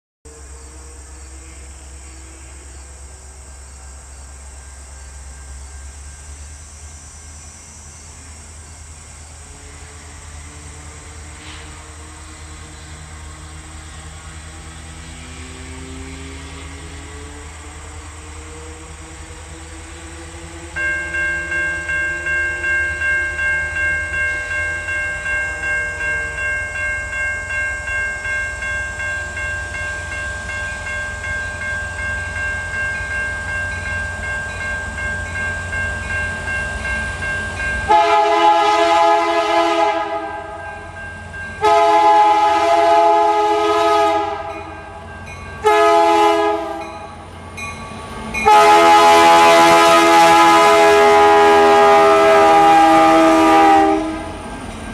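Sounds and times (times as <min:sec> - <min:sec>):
locomotive air horn: 0:00.3 - 0:03.1, 0:37.8 - 0:40.7, 0:41.6 - 0:44.8, 0:45.6 - 0:47.0, 0:48.4 - 0:54.4
freight locomotives rumbling: 0:00.3 - 0:54.9
pulsing bell ringing: 0:20.7 - 0:37.9, 0:40.6 - 0:41.7, 0:44.5 - 0:45.8, 0:46.8 - 0:48.6.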